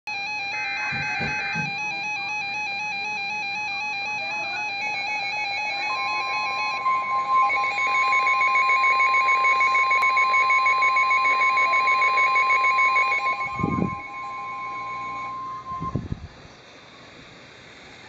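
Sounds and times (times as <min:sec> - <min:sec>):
steady alert tone: 0:03.4 - 0:16.0
two-pitch warbling tone: 0:05.5 - 0:16.0.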